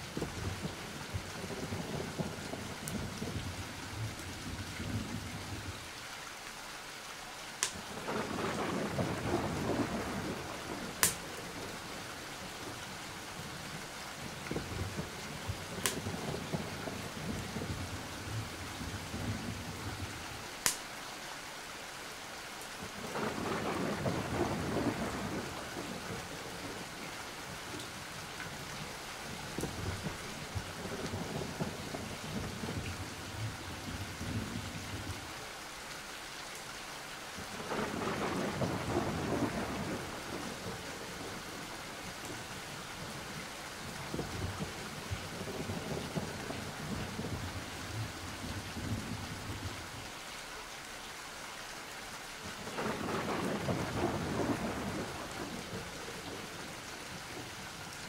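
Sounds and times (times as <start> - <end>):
rain falling: 0.0 - 58.0
thunder rolling: 0.1 - 5.8, 7.9 - 11.8, 14.3 - 20.2, 23.1 - 27.0, 29.3 - 35.2, 37.5 - 41.6, 43.1 - 49.7, 52.6 - 56.8
sharp thunder cracks: 8.0 - 11.7, 23.1 - 26.8, 37.6 - 41.3, 52.6 - 56.4.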